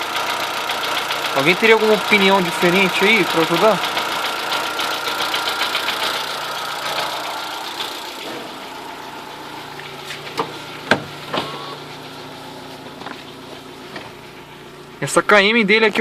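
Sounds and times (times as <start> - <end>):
rhythmic engine knocking: 0.0 - 9.5
car engine idling: 0.0 - 16.0.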